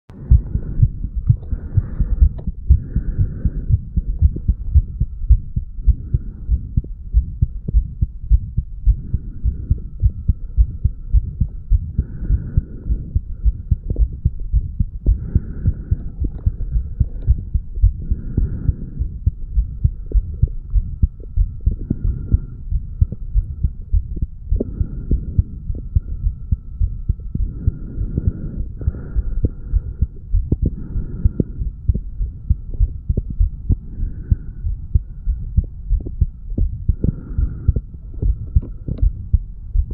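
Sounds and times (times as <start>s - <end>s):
heartbeat thuds: 0.1s - 39.9s.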